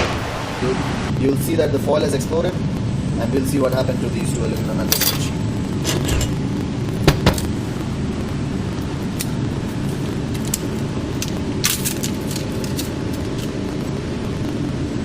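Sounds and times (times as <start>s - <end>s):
low machinery hum: 0.0s - 15.0s
metal sheets clinking: 4.9s - 6.4s.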